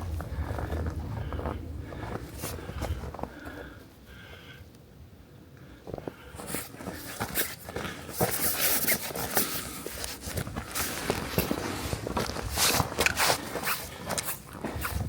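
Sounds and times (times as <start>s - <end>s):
footsteps crunching through snow: 5.9s - 15.0s.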